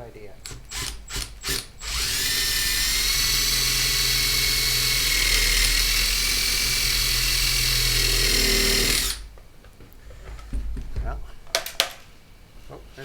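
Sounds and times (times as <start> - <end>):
electric drill whining: 0.4 - 9.3.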